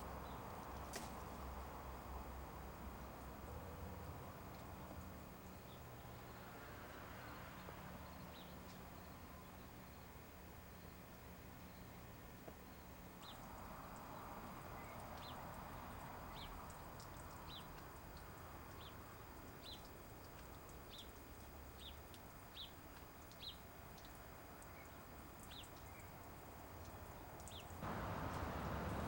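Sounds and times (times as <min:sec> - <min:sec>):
steady hiss: 0:27.5 - 0:29.0.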